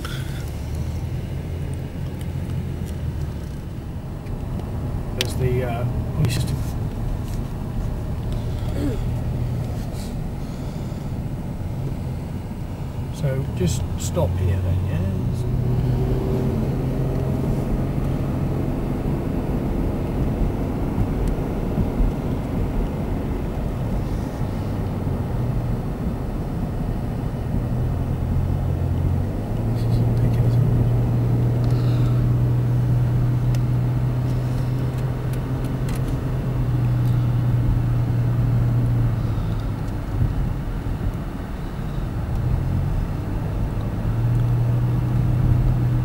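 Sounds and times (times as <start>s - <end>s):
car engine running while driving: 0.0s - 46.0s.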